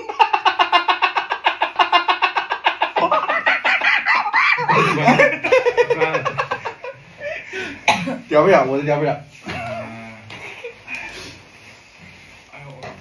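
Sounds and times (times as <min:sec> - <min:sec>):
rapid cackling chatter: 0:00.0 - 0:07.8.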